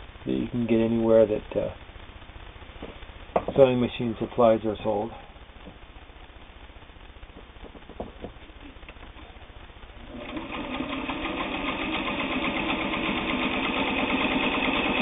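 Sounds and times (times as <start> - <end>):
sewing machine stitching: 10.0 - 15.0.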